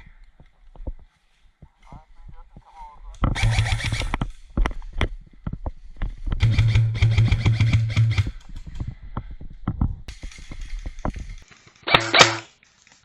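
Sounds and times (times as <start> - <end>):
airsoft gun full-auto burst: 3.4 - 4.1, 6.4 - 8.4.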